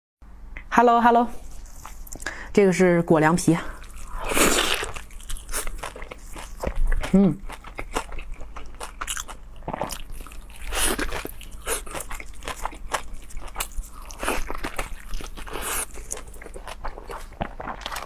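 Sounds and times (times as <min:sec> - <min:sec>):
chewing noodles: 0:03.7 - 0:18.0.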